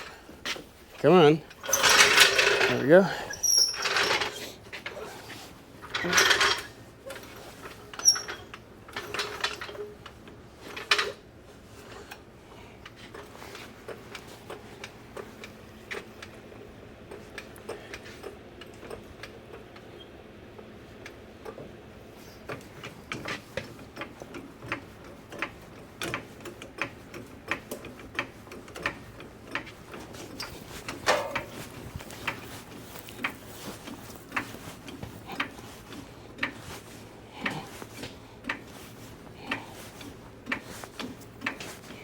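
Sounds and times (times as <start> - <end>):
light irregular clicks and knocks: 22.4 - 42.0.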